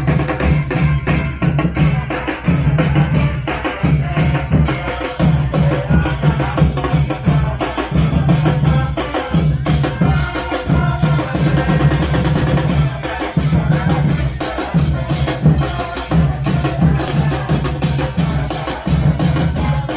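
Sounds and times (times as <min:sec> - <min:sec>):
brass band horns: 0:00.0 - 0:06.4
steady drum beat: 0:00.0 - 0:19.9.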